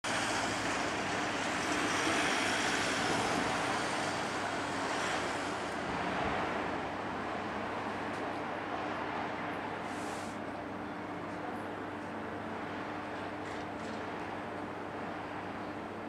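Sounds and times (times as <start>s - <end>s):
electric train running past: 0.1s - 9.4s.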